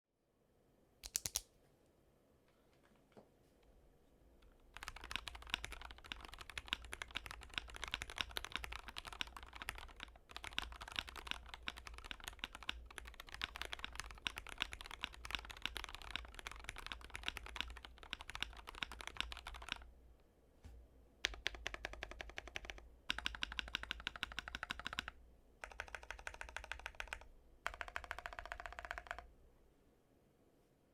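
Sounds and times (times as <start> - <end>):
mechanical keyboard typing: 1.0 - 1.4, 4.7 - 19.9, 21.2 - 29.3.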